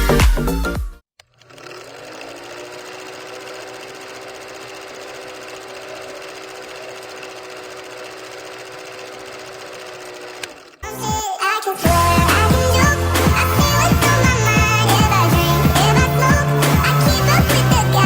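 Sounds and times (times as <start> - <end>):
electronic dance music: 0.0 - 0.9, 10.8 - 18.0.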